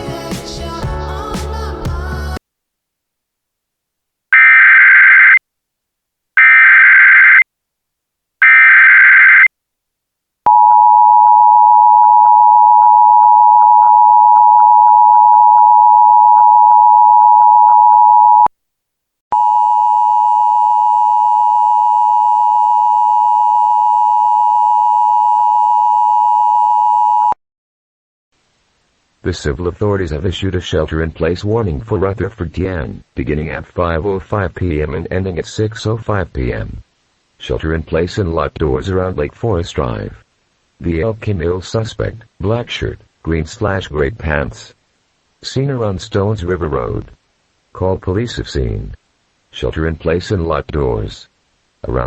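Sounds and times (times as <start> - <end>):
data tone bursts: 8.4 - 9.5, 10.5 - 18.5
steady attention tone: 10.5 - 18.5.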